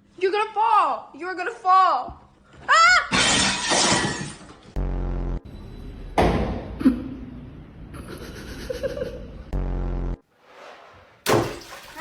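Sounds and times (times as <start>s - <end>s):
crash with glass shattering: 11.3s - 12.0s.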